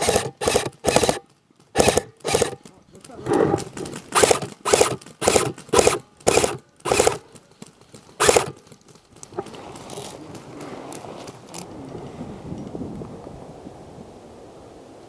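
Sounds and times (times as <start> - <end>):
airsoft rifle full-auto bursts: 0.0 - 2.6, 4.1 - 7.4, 8.2 - 8.6
steady rustle: 0.0 - 13.1.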